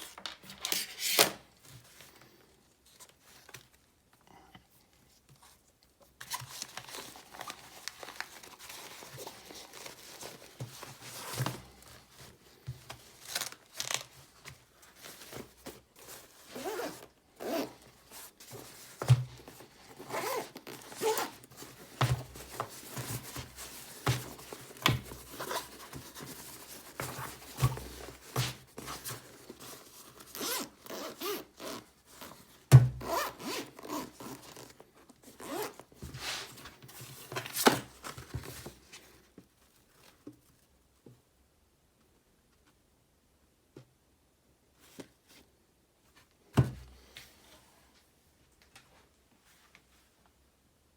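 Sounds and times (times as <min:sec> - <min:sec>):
rustling and scraping: 0:05.1 - 0:40.8
zipper opening and closing: 0:16.5 - 0:17.9, 0:20.0 - 0:21.4, 0:25.3 - 0:25.7, 0:30.3 - 0:31.9, 0:33.0 - 0:34.7, 0:35.4 - 0:35.8.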